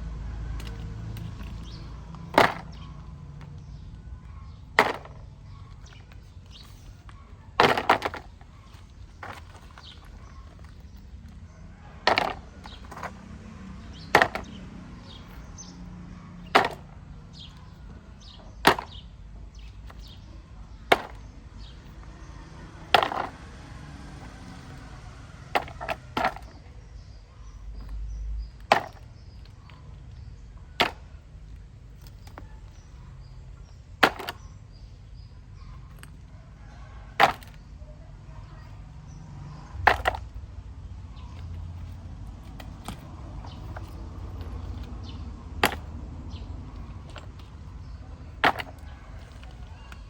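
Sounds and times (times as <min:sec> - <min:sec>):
sharp knocks: 0:13.8 - 0:14.6.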